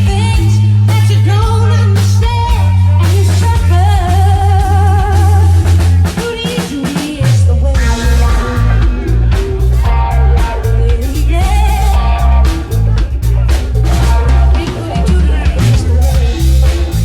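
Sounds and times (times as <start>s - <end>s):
loud rock song: 0.0s - 17.0s
person singing: 0.0s - 17.0s.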